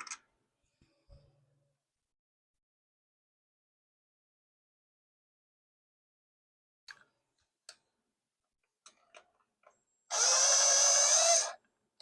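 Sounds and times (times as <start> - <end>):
power drill running: 10.1 - 11.6.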